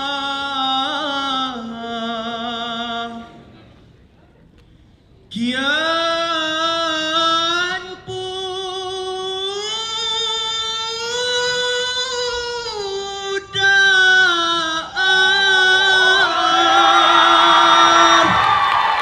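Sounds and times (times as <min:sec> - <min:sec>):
audience cheering and whooping: 0:15.5 - 0:19.0.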